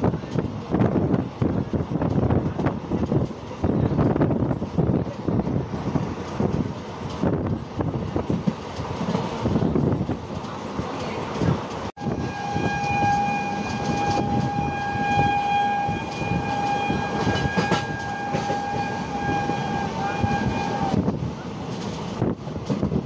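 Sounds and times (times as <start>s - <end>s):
train wheels clacking on track: 0.0s - 23.0s
train horn: 12.0s - 21.1s.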